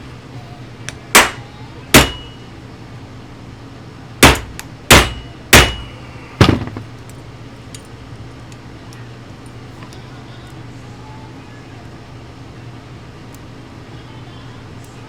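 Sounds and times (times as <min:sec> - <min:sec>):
hammer striking metal: 0:00.9 - 0:02.4, 0:04.2 - 0:06.8.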